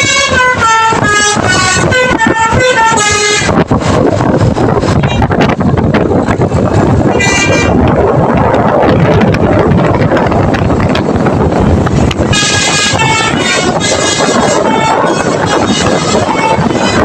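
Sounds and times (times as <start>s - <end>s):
musical bus horn notes: 0.0s - 3.6s, 12.3s - 17.0s
steady vehicle noise: 0.0s - 17.0s.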